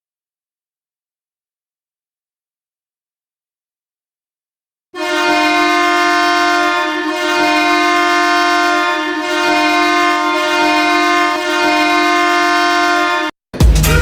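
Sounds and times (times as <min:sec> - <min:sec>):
hockey goal horn blaring: 0:05.0 - 0:13.4.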